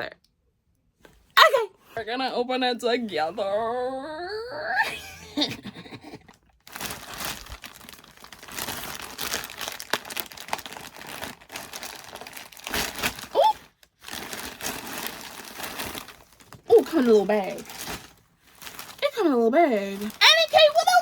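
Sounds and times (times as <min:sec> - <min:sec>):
package wrapping tearing and crinkling: 0:06.6 - 0:19.0.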